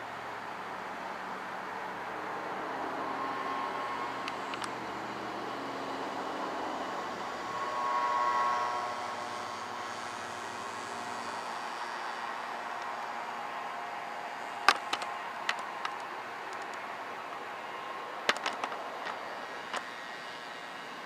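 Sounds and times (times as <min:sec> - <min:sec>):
steady rushing noise: 0:00.0 - 0:21.0
fire siren: 0:02.6 - 0:14.2.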